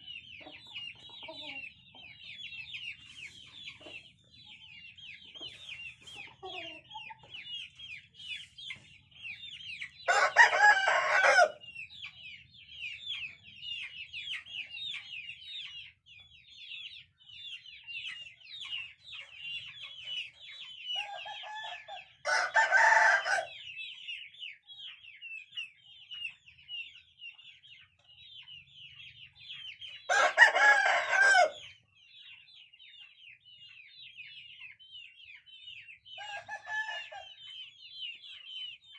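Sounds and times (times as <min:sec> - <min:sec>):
birds chirping: 0:00.0 - 0:38.9
rooster crowing: 0:10.1 - 0:11.6, 0:21.3 - 0:23.6, 0:30.1 - 0:31.6.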